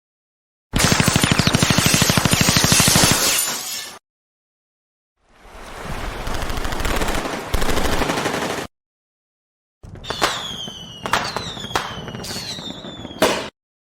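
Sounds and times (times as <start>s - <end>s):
automatic gunfire: 0.8s - 3.2s, 6.7s - 8.7s
high falling whistle: 10.0s - 13.5s.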